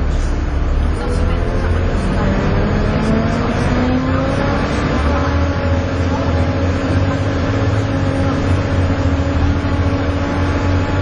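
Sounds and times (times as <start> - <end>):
bus diesel engine pulling hard: 0.0 - 11.0.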